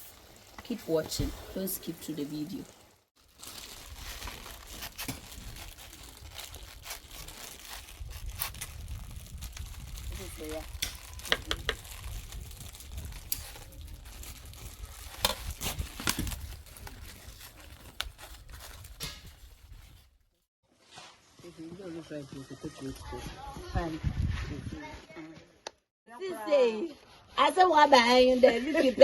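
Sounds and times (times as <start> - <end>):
rice sizzling in pot: 0.0 - 3.1.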